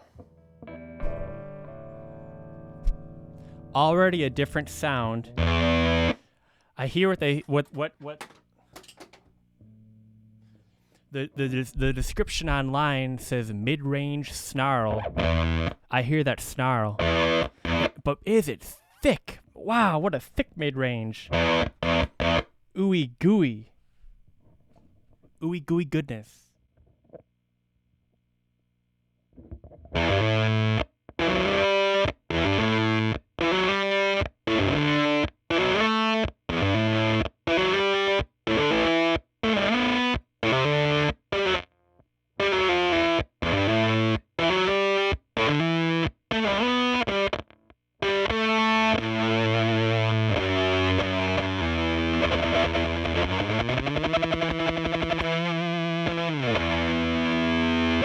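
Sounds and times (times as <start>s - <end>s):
fuzzed electric guitar: 0.0s - 6.3s, 14.8s - 15.9s, 16.9s - 18.0s, 21.2s - 22.5s, 29.4s - 41.7s, 42.4s - 58.0s.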